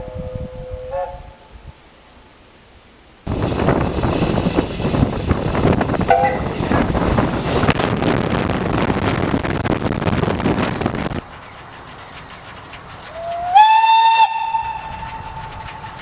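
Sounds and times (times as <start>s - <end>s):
steam locomotive hissing: 3.3s - 16.0s
steam whistle: 6.1s - 6.5s, 13.2s - 14.9s.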